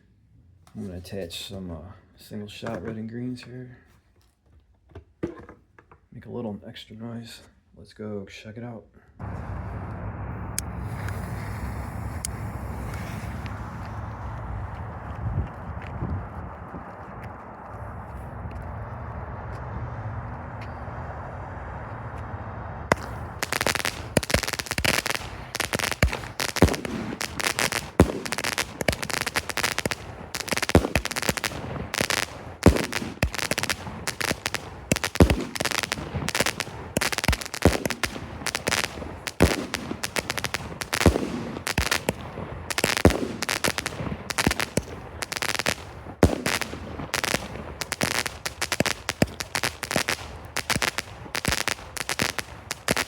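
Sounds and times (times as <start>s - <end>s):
crackling mines: 9.2s - 19.3s, 22.9s - 53.0s
fireworks cake rapid shots: 22.9s - 53.0s.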